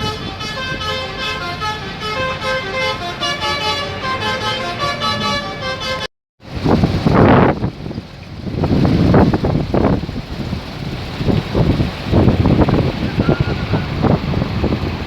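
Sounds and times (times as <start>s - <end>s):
multi-tone bus air horns: 0.0s - 6.1s.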